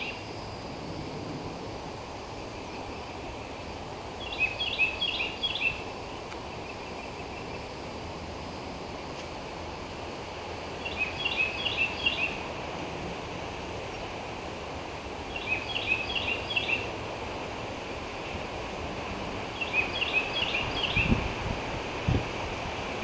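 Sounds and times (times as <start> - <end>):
songbird chirping: 10.8 - 12.4, 19.4 - 21.2.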